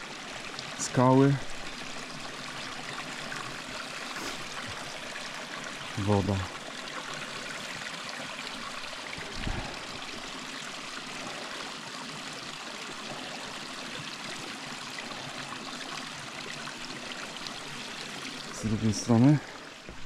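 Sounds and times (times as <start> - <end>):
stream rushing over rocks: 0.0 - 20.0.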